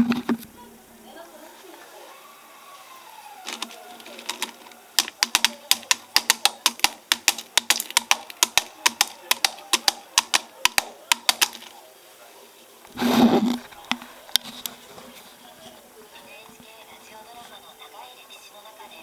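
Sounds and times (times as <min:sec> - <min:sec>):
rapid sharp clicks: 0:03.4 - 0:11.8.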